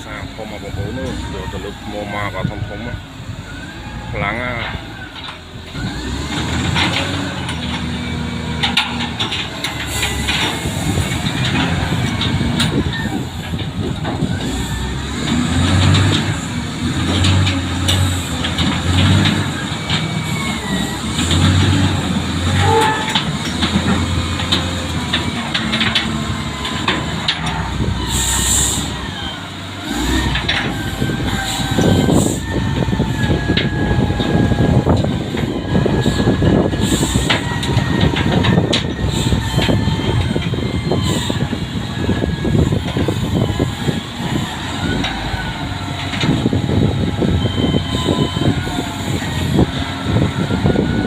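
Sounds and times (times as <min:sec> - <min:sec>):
heavy diesel engine drone: 0:00.0 - 0:51.0
metallic knocks and clanks: 0:21.2 - 0:27.8.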